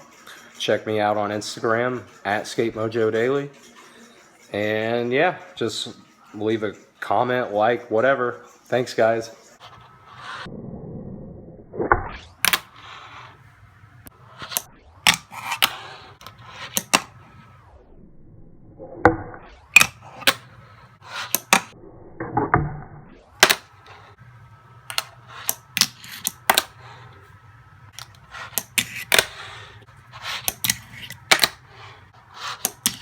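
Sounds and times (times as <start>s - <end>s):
low steady hum: 19.7s - 33.0s
fingerboard deck clicking: 23.4s - 23.8s, 24.9s - 26.8s, 30.3s - 31.6s, 32.6s - 33.0s.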